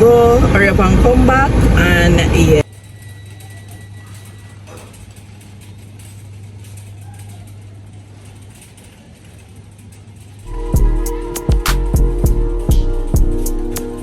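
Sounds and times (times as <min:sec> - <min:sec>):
music: 0:10.5 - 0:14.0.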